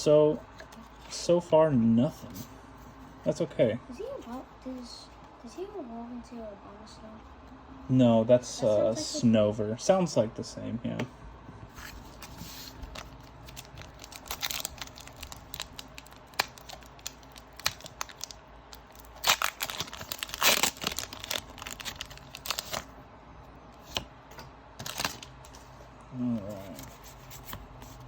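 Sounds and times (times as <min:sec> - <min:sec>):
foil ripping: 0:12.9 - 0:22.9
foil wrapper tearing and crinkling: 0:12.9 - 0:22.9, 0:24.8 - 0:25.3.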